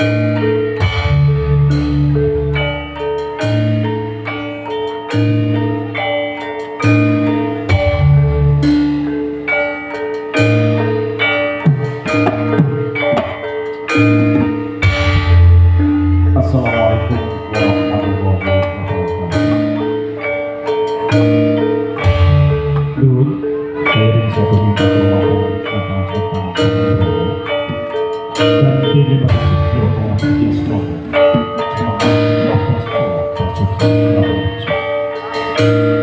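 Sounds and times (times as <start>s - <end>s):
metallophones and gongs ringing: 0.0s - 36.0s
low drum strokes: 28.5s - 34.6s.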